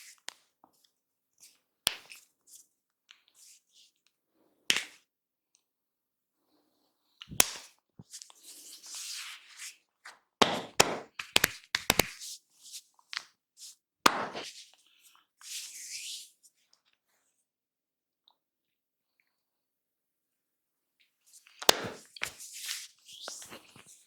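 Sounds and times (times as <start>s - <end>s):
hands slapping a head: 4.7s - 5.0s, 7.2s - 8.2s, 10.4s - 12.2s, 14.1s - 14.6s, 21.6s - 23.9s
hands rubbing through hair: 21.4s - 24.0s.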